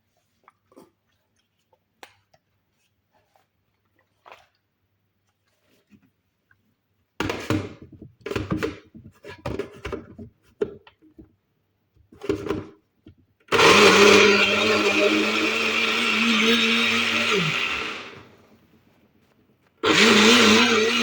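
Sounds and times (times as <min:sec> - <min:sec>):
blender running: 0:13.5 - 0:18.4, 0:19.8 - 0:21.0.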